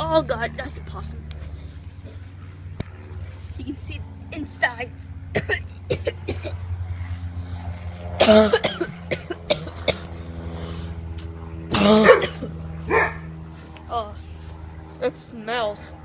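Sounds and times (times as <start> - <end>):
low steady hum: 0.0 - 16.0
person coughing: 5.4 - 6.6, 8.2 - 10.1, 11.7 - 12.5.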